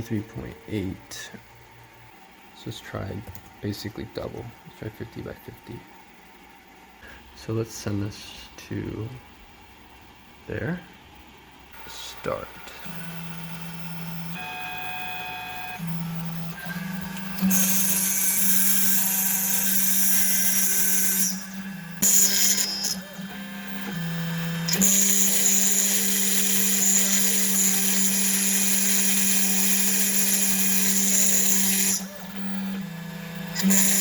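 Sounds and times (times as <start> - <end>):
spindle bit cutting into board: 17.3 - 23.1, 24.7 - 32.5.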